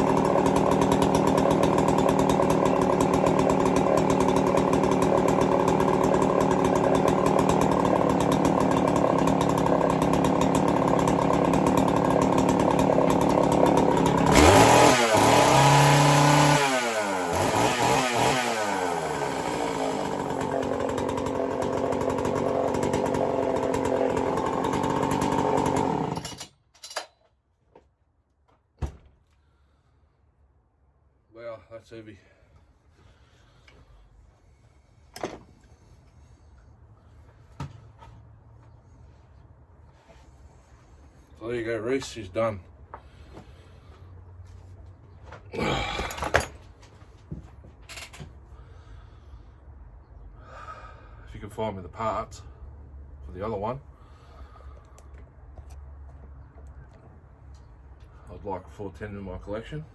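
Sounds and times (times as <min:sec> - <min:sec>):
chainsaw idling and revving: 0:00.0 - 0:26.4, 0:45.6 - 0:46.5.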